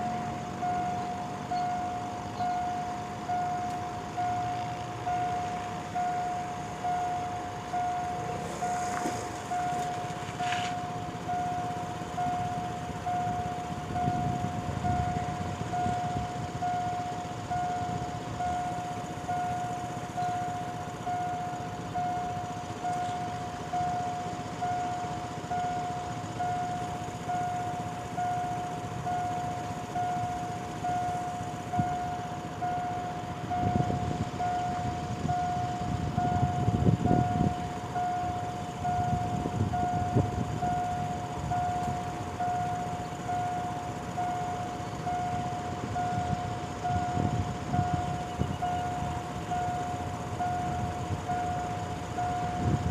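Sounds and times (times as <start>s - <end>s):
level crossing warning bell: 0.0s - 52.9s
train passing rumble: 0.0s - 52.9s.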